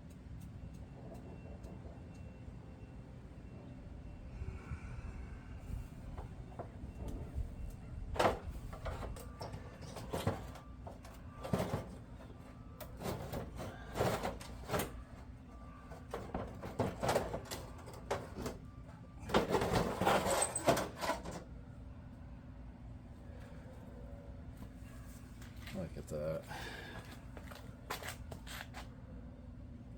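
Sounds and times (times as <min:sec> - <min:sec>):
low steady hum: 0:00.0 - 0:29.9
parts knocking and clattering: 0:06.1 - 0:21.5.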